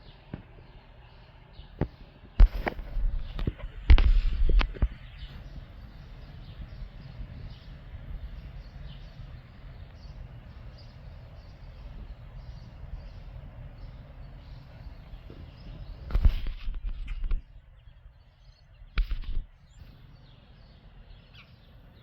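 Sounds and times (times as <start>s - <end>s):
wind rumble on microphone: 0.0s - 21.2s
faint bird chirps: 2.8s - 22.0s
loud bump and rustle: 15.3s - 17.5s.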